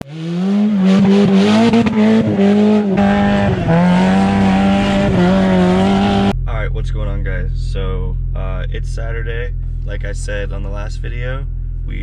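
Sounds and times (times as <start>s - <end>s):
car engine revving high: 0.0s - 6.4s.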